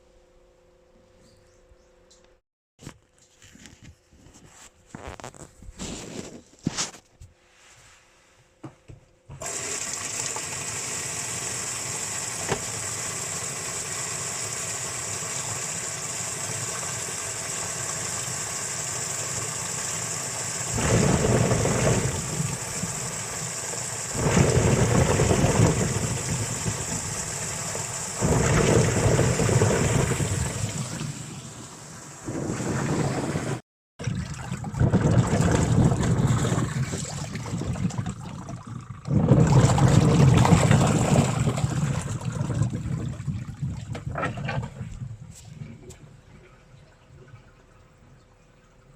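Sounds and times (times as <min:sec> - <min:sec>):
washing machine drum churning: 0:09.4 - 0:31.1, 0:34.0 - 0:44.8
rush of water: 0:09.4 - 0:33.6.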